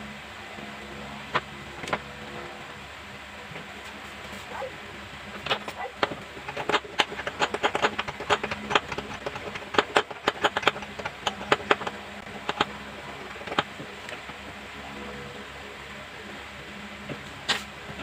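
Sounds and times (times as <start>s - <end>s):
faint steady hum: 0.0s - 18.0s
sharp clicks and taps: 5.3s - 14.4s.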